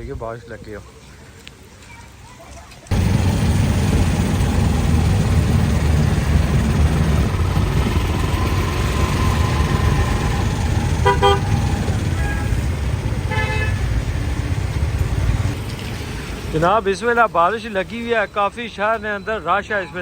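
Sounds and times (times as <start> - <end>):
street traffic rumble: 0.0 - 20.0
heavy rain: 1.0 - 16.7
vehicle horns tooting: 9.2 - 14.1.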